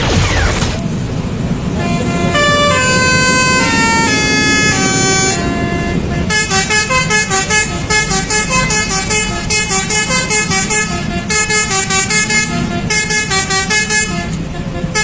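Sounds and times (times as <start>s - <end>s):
low engine rumble: 0.0s - 15.0s
musical air horn playing a tune: 1.6s - 15.0s.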